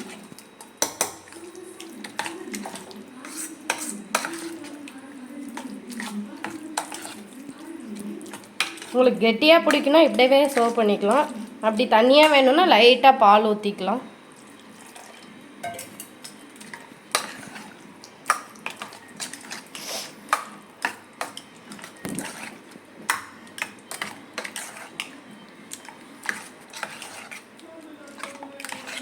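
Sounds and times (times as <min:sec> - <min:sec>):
soft wet squishing: 0:00.0 - 0:09.0, 0:14.2 - 0:29.0
spoon clinking against bowl: 0:15.6 - 0:16.2.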